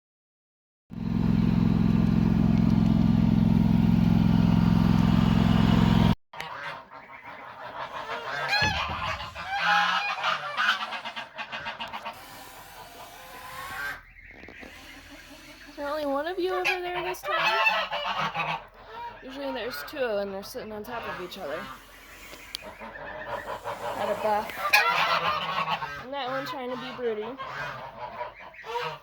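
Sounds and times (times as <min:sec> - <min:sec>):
geese honking: 0:06.4 - 0:29.0
loud steady low hum: 0:08.5 - 0:11.1.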